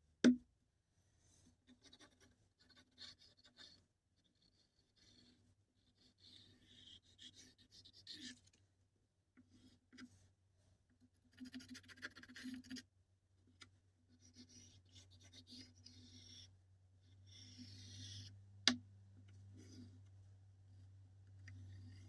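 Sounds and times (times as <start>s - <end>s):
faint scratching and rubbing: 1.2s - 8.6s, 11.0s - 12.9s, 13.6s - 18.4s, 19.2s - 22.0s.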